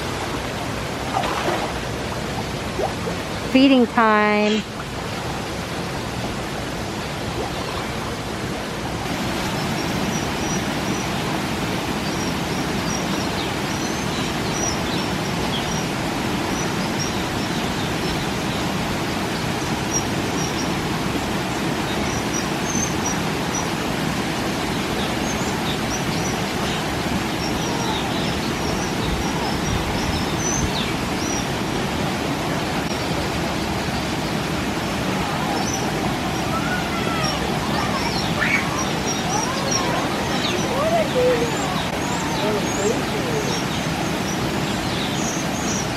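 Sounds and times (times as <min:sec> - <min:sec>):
small birds chirping: 0:11.9 - 0:20.8, 0:24.5 - 0:31.5, 0:35.3 - 0:45.9.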